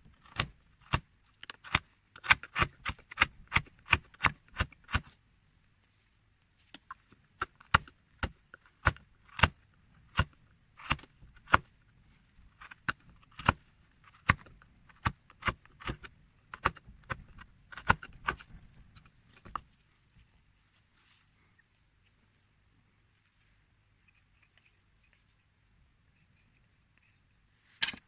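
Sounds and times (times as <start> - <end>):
carving tool cutting wood: 0.2 - 5.1, 7.4 - 11.7, 12.6 - 19.6.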